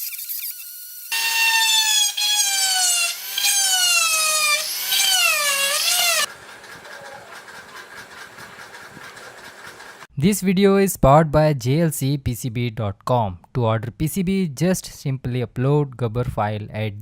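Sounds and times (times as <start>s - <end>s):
small electric motor whining: 0.0s - 9.5s.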